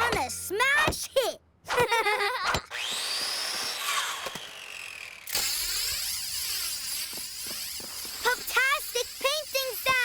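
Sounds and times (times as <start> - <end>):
whirring hiss: 5.3 - 10.0.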